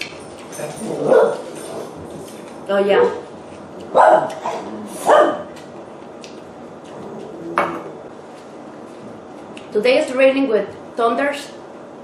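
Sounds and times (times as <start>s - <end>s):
dog barking: 1.0s - 1.4s, 3.9s - 5.5s.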